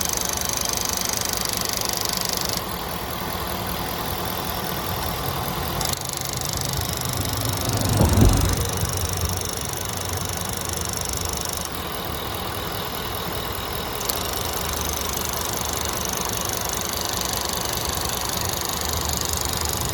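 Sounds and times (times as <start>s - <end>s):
purge valve rapid ticking: 0.0s - 8.0s, 8.6s - 19.9s
truck engine idling: 0.0s - 19.9s.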